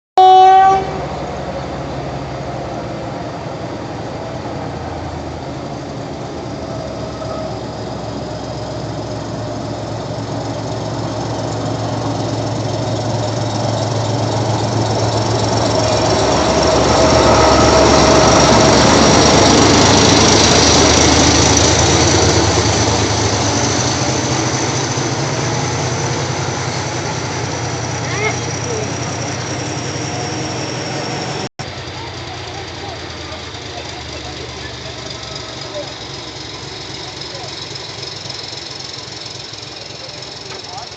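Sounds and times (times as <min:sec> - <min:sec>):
locomotive horn blast: 0:00.2 - 0:01.2
diesel locomotive engine running: 0:00.2 - 0:40.9
faint high squeal: 0:07.1 - 0:07.8.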